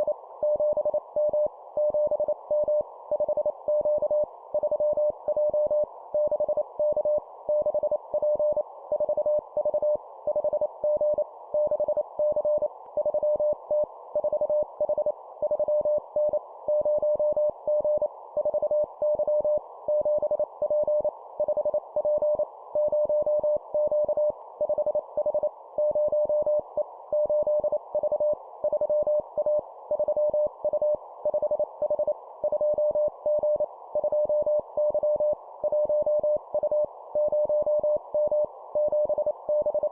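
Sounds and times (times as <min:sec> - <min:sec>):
morse code beeps: 0:27.2 - 0:39.9.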